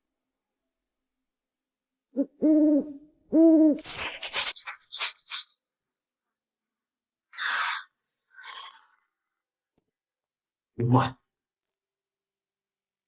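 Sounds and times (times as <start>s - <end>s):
owl hooting: 2.1s - 4.8s.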